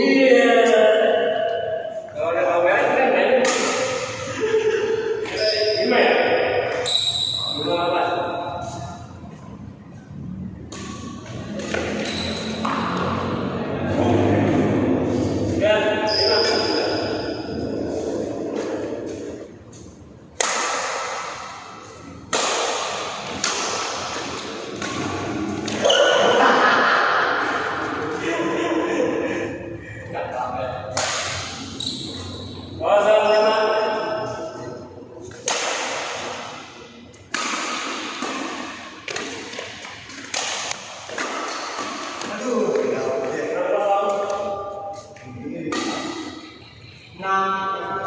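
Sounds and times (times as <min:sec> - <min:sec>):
racket striking shuttlecock: 0:03.4 - 0:04.2, 0:10.7 - 0:13.2, 0:18.6 - 0:26.2, 0:30.9 - 0:31.8, 0:35.3 - 0:42.9, 0:44.1 - 0:46.5.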